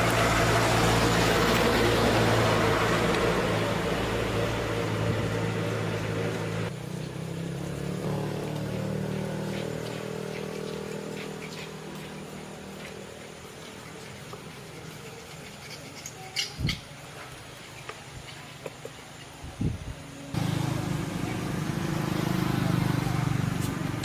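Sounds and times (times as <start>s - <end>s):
motorcycle engine running: 0.0s - 14.8s, 20.3s - 24.0s.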